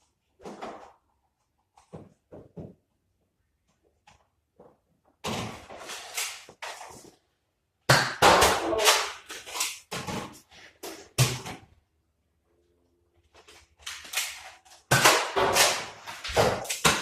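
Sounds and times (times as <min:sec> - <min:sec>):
toy blaster knocks and clatters: 0:13.9 - 0:17.0.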